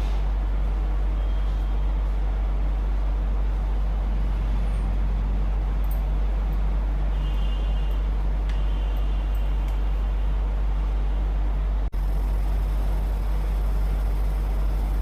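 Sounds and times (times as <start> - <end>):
steady low hum: 0.0 - 15.0
faint high whine: 12.0 - 15.0.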